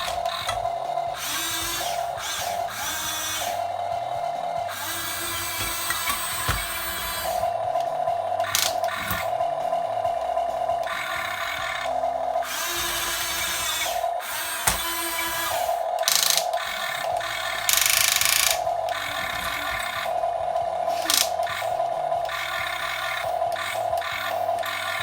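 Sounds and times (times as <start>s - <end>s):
electric gear motors whining: 0.0s - 25.0s
ratcheting gear noise: 0.0s - 25.0s
rattling and scraping: 0.0s - 25.0s.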